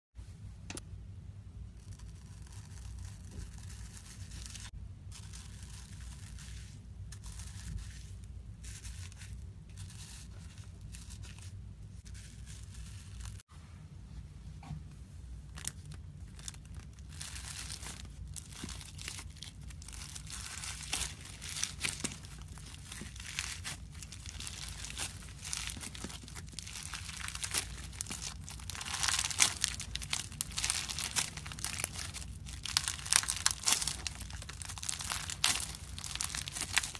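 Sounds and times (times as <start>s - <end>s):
low steady hum: 0.2s - 36.9s
slime crackling and tearing: 15.5s - 36.9s.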